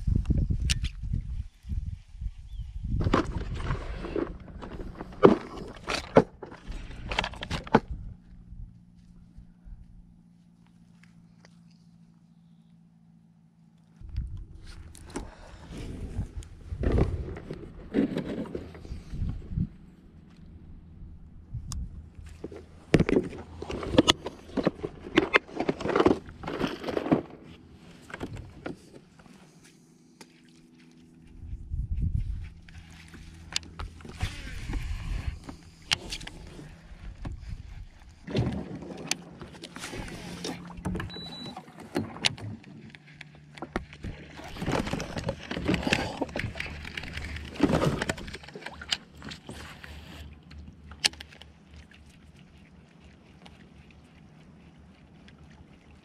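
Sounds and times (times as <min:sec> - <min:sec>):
faint steady hum: 0:00.0 - 0:56.0
water splashing around kayak: 0:14.4 - 0:31.2, 0:32.4 - 0:56.0
gear knocking and rustling: 0:22.2 - 0:29.3, 0:40.8 - 0:51.6.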